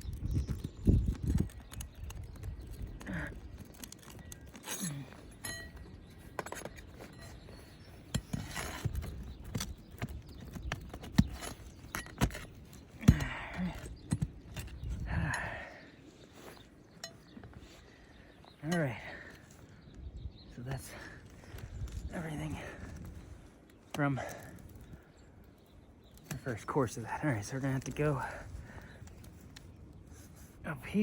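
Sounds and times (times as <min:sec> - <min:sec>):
shingles crackling: 0:00.0 - 0:31.0
metal tool scraping shingles: 0:03.8 - 0:13.0.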